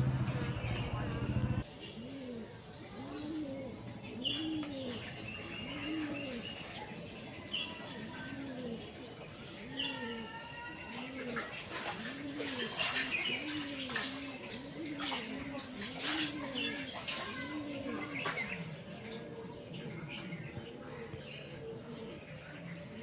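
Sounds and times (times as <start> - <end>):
dove cooing: 0.0 - 6.8, 8.1 - 23.0
small birds chirping: 0.0 - 23.0.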